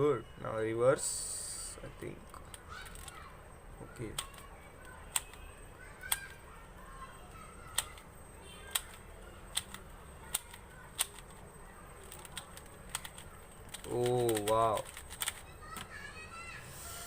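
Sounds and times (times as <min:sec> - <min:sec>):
plastic puzzle cube clicking: 0:02.3 - 0:03.2, 0:04.1 - 0:05.4, 0:06.0 - 0:06.4, 0:07.7 - 0:11.4, 0:12.0 - 0:15.9.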